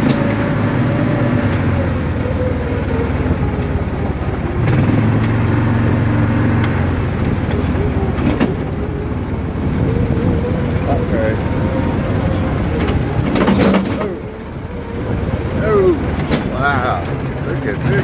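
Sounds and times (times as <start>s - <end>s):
atv engine running: 0.0s - 18.0s.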